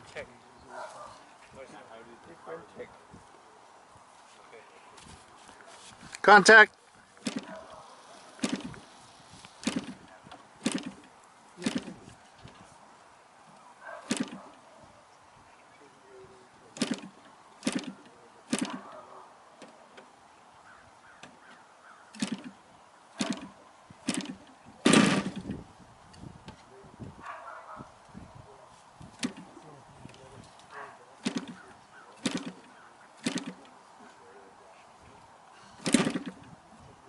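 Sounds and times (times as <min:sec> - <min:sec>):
engine sputter: 0:07.2 - 0:07.6, 0:08.4 - 0:08.9, 0:09.6 - 0:12.6, 0:14.1 - 0:14.5, 0:16.7 - 0:19.0, 0:22.1 - 0:25.6, 0:29.1 - 0:29.6, 0:31.2 - 0:33.7, 0:35.8 - 0:36.5
engine sharp pops: 0:07.2 - 0:07.8, 0:08.4 - 0:12.6, 0:14.0 - 0:14.6, 0:16.8 - 0:19.0, 0:22.1 - 0:22.6, 0:23.2 - 0:25.6, 0:29.1 - 0:29.6, 0:31.2 - 0:33.7, 0:35.8 - 0:36.5.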